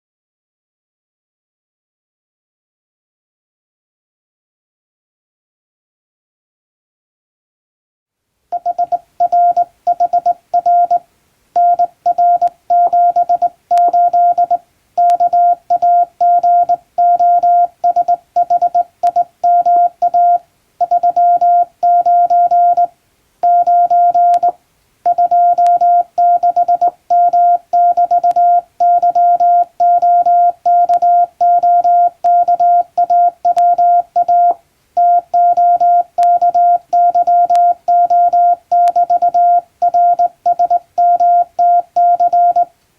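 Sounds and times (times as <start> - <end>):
morse code beeps: 8.6 - 11.0, 11.6 - 42.7.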